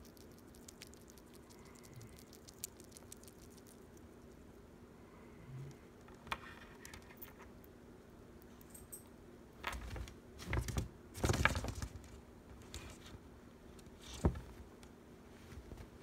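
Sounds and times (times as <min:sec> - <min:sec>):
crinkling and rustling: 0:09.7 - 0:14.7.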